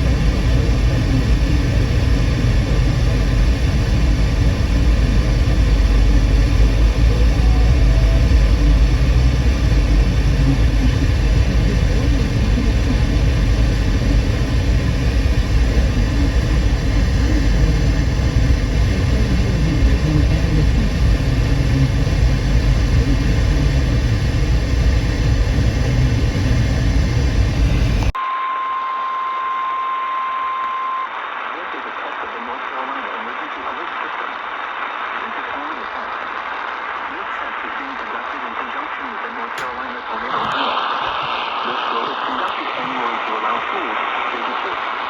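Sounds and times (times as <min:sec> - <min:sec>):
vehicle engine rumble: 0:00.0 - 0:28.2.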